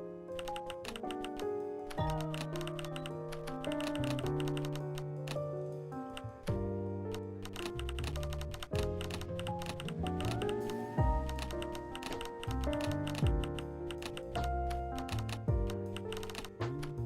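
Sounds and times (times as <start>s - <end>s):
instrumental electronic music: 8.1s - 17.0s.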